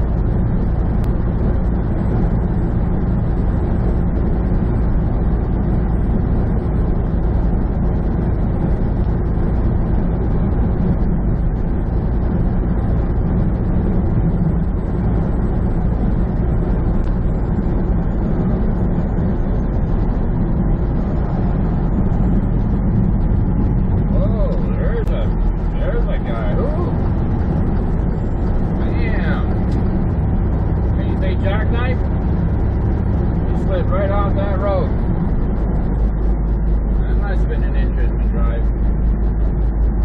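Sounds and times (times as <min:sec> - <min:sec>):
diesel truck engine droning: 0:00.0 - 0:40.0
road and tyre noise: 0:00.0 - 0:40.0.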